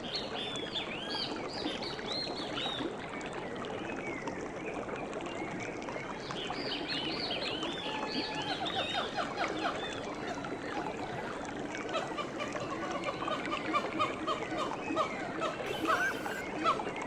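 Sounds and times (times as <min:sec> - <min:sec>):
running water: 0:00.0 - 0:17.0
birds chirping: 0:15.6 - 0:16.4
short repeated bird call: 0:15.6 - 0:16.4.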